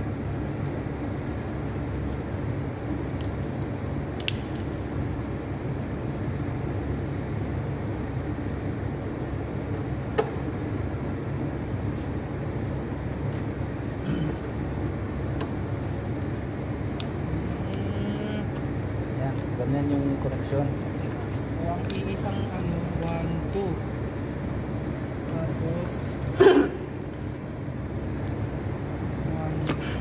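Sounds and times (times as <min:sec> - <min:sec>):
low mechanical hum: 0:00.0 - 0:30.0
sharp clicks: 0:04.2 - 0:04.7.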